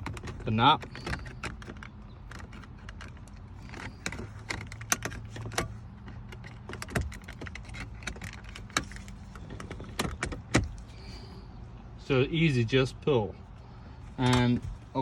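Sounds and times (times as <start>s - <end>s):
plastic clicks and rattles: 0.0s - 10.8s.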